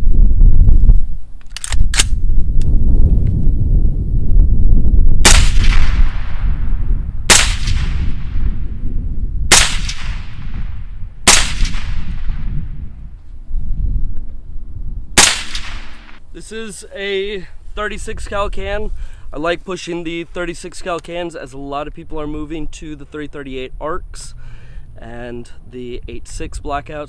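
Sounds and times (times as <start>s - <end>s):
sharp rifle clicks: 1.4s - 2.7s, 15.2s - 16.2s
suppressed rifle shots with echo: 5.2s - 6.4s, 7.3s - 8.5s, 9.5s - 12.5s, 15.2s - 16.2s.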